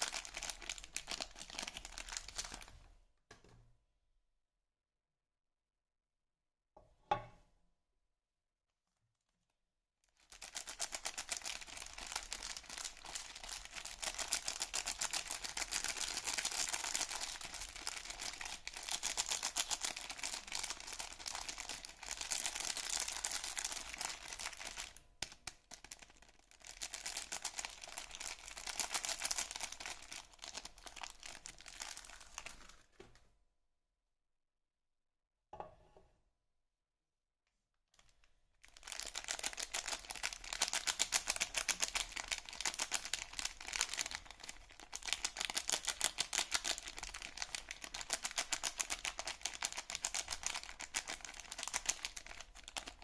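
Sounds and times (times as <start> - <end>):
packaging crinkling and rustling: 0.0 - 2.8, 10.1 - 33.2, 38.0 - 53.0.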